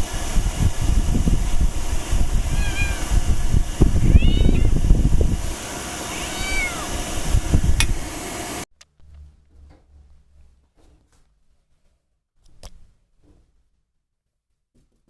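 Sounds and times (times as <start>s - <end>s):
low rumbling: 0.0s - 8.2s
cat meowing: 2.4s - 3.2s, 4.0s - 4.8s, 6.1s - 7.0s.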